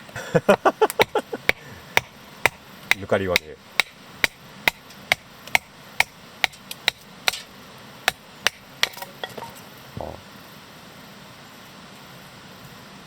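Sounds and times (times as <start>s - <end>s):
blade knocking into wood: 0.9s - 7.5s.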